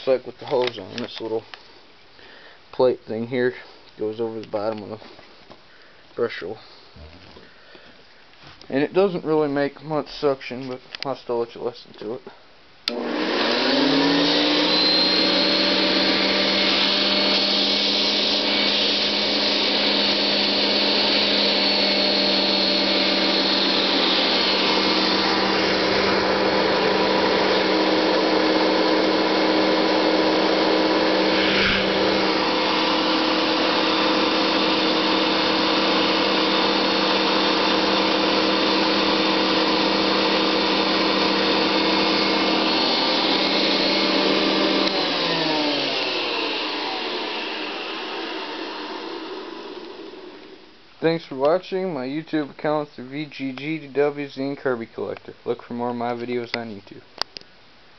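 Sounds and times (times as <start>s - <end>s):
vacuum cleaner motor running: 12.9s - 50.7s.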